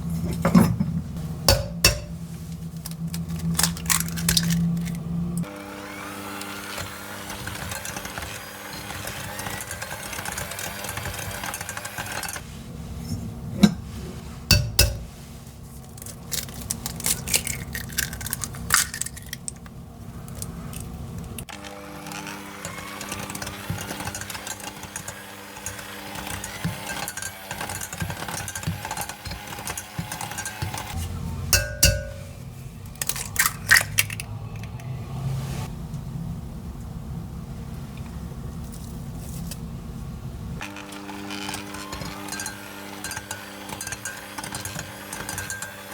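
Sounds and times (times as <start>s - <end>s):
electric mixer running: 5.4s - 12.4s, 21.5s - 31.0s, 40.6s - 45.9s.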